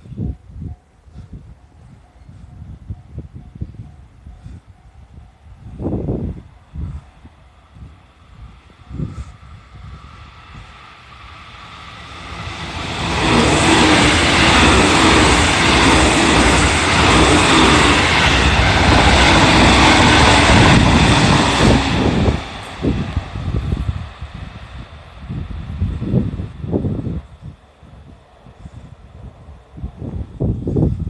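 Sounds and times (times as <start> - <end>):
electric train wheels rumbling: 0.0 - 31.0.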